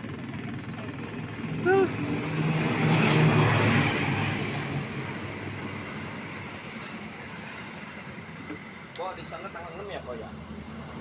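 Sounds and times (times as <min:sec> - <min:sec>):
motor vehicle passing: 0:01.4 - 0:07.0.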